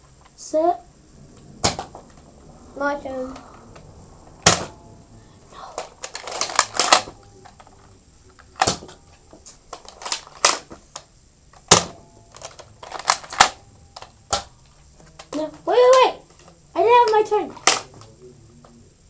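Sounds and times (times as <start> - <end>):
toy blaster clicks and snaps: 17.1 - 17.9.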